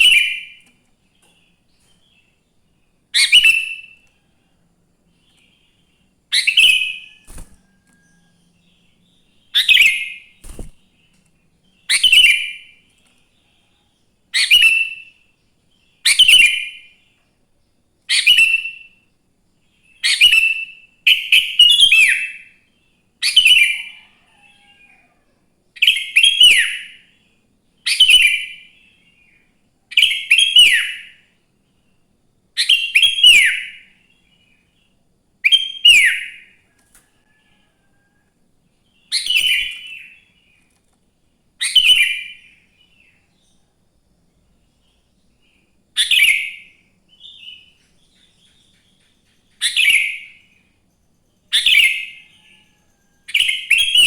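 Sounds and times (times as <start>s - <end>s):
bulbul singing whistled phrases: 3.1s - 4.0s, 11.8s - 12.7s, 35.4s - 36.5s.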